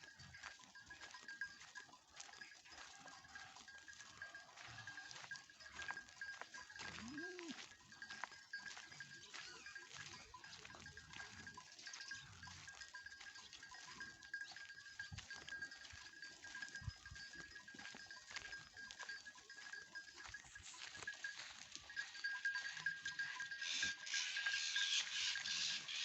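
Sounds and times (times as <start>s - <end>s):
goats bleating faintly: 6.8s - 7.7s.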